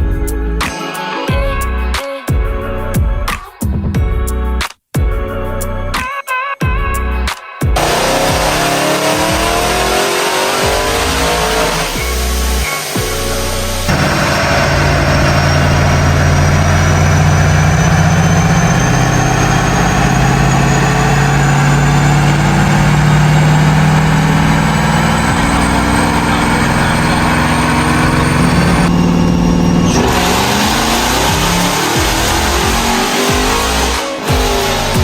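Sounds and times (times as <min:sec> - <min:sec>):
car engine running: 0:07.8 - 0:35.0.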